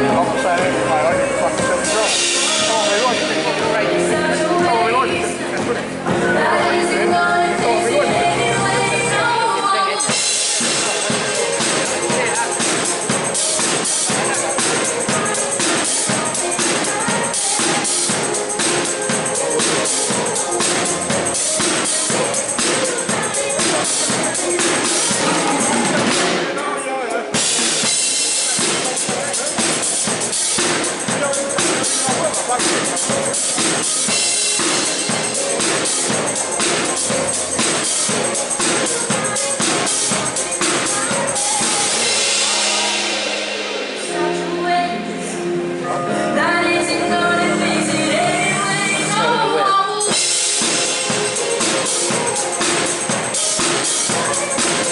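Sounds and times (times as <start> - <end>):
live pop band playing: 0.0 - 54.9
person singing: 0.0 - 54.9
drum and tambourine beat: 1.6 - 3.8, 10.1 - 26.4, 27.4 - 43.8, 50.1 - 54.9.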